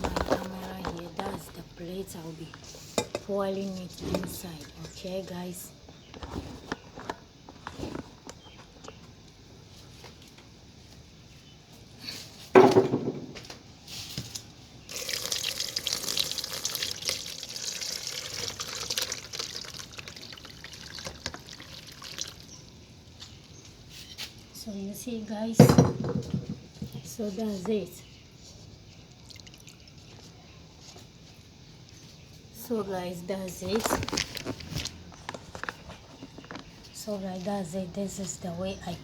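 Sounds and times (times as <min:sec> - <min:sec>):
water pouring and splashing: 0:14.9 - 0:22.5.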